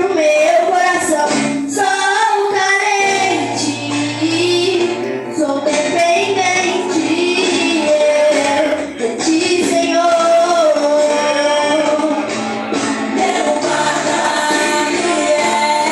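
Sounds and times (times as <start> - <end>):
woman singing: 0.0 - 12.4, 13.1 - 15.9
instrumental accompaniment: 0.0 - 15.9.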